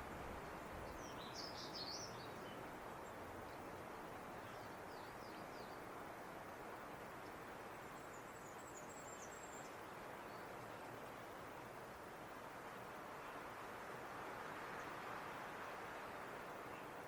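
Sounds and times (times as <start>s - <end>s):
background hiss: 0.0s - 17.0s
robin singing: 0.8s - 3.2s.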